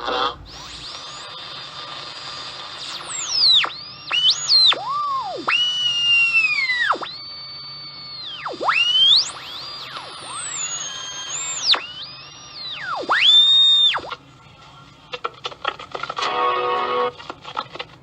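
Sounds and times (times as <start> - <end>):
radio tuning whistles: 0.0 - 14.2
radio static hiss: 0.0 - 17.7.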